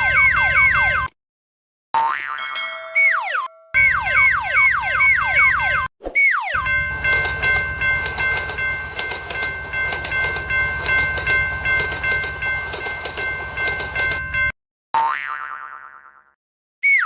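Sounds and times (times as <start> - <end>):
high ringing tone: 2.4 - 4.3
train wheels clicking over rail joints: 6.9 - 14.3.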